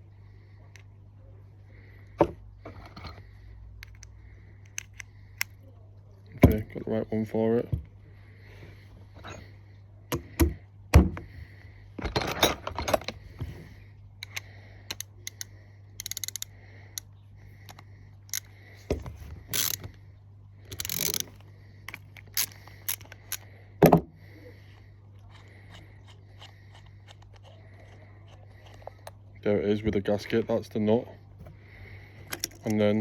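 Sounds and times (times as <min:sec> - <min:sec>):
socket ratchet clicking: 0:03.8 - 0:05.6, 0:14.2 - 0:17.1, 0:17.7 - 0:18.5, 0:19.5 - 0:19.9, 0:20.7 - 0:23.4, 0:32.3 - 0:32.8
metal tools clinking: 0:12.0 - 0:13.2.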